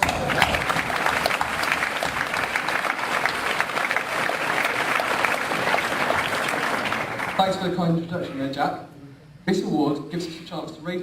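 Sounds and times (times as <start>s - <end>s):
audience applauding and cheering: 0.0s - 7.7s.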